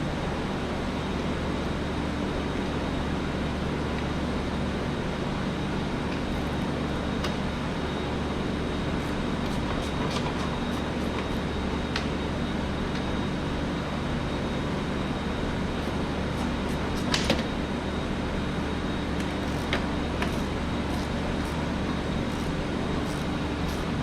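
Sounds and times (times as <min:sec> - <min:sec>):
machine drone: 0:05.9 - 0:24.0.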